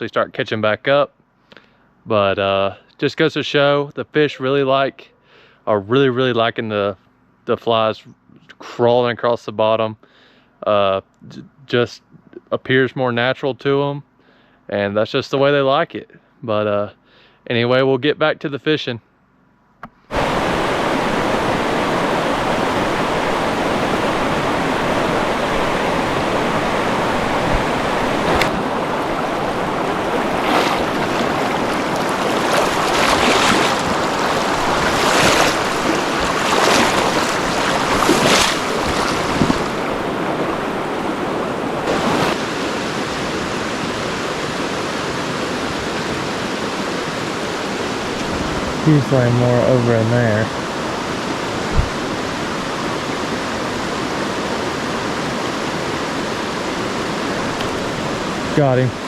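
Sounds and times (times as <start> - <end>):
stream water rushing: 20.1 - 59.0.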